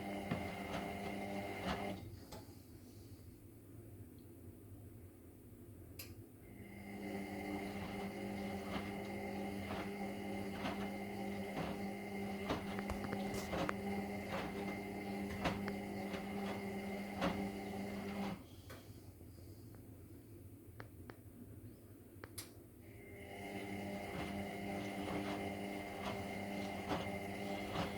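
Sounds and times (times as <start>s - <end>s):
washing machine motor hum and whine: 0.0s - 2.6s, 6.4s - 19.2s, 22.8s - 27.9s.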